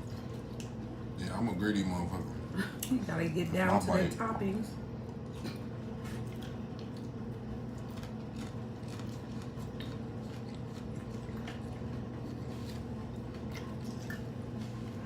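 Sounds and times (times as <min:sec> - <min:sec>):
steady low hum: 0:00.0 - 0:15.0
taco shells crunching: 0:05.0 - 0:15.0.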